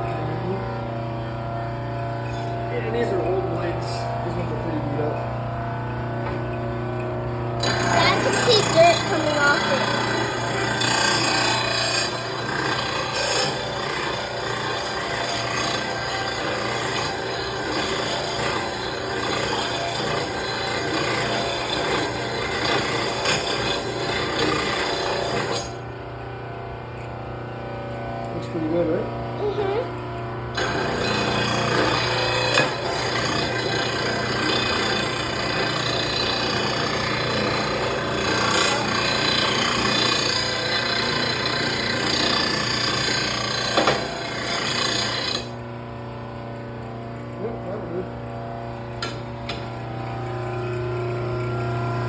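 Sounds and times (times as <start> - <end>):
grinding wheel rasping on steel: 0.0 - 5.5, 6.5 - 25.8, 30.6 - 45.6
motor humming: 0.0 - 52.0.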